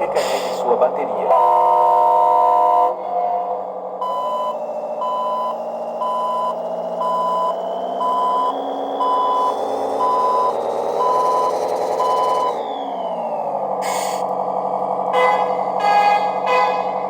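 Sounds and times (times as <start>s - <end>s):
synthesized diesel engine: 0.0s - 17.0s
electronic reversing beeper: 1.3s - 3.0s, 4.0s - 12.9s.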